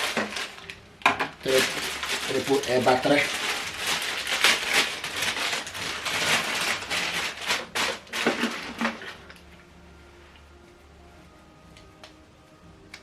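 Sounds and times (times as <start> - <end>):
plastic packaging crinkling: 0.0 - 9.4.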